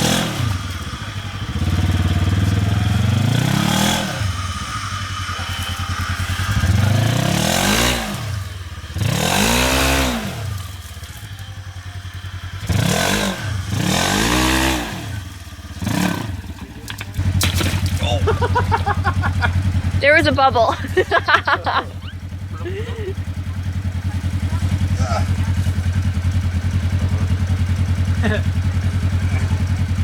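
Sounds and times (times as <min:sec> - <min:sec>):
utv engine revving hard: 0:00.0 - 0:30.0
clatter and scraping: 0:01.7 - 0:21.0.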